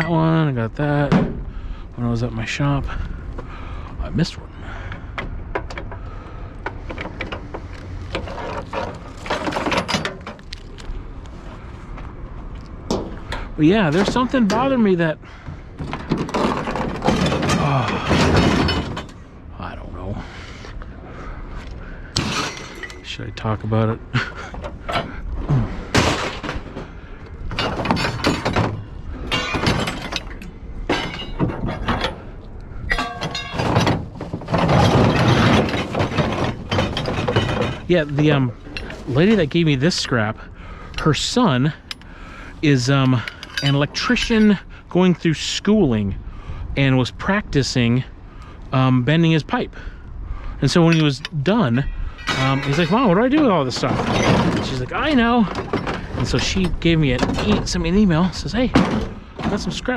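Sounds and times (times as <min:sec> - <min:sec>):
scrap metal clinking: 0:22.2 - 0:23.5, 0:27.5 - 0:39.6, 0:43.1 - 0:44.6, 0:50.7 - 0:59.9.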